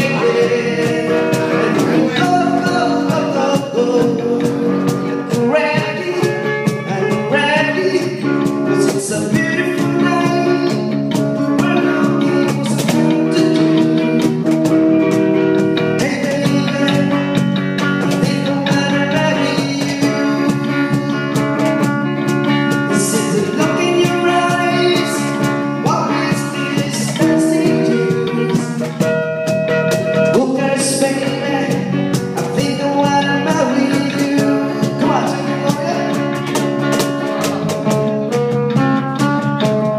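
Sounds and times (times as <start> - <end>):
person singing: 0.0 - 22.0, 22.6 - 37.9
drum hits: 0.0 - 39.9
guitar: 0.0 - 39.9.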